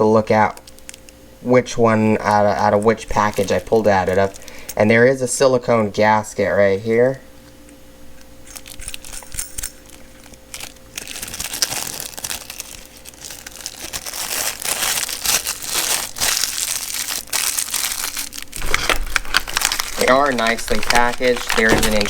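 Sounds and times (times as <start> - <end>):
packaging crinkling: 0.4 - 1.2, 1.8 - 4.7, 8.4 - 22.0.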